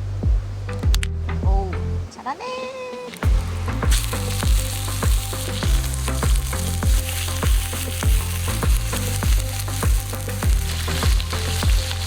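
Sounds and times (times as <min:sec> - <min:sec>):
background music with steady beat: 0:00.0 - 0:02.2, 0:02.9 - 0:12.0
prawns sizzling on a griddle: 0:03.2 - 0:12.0.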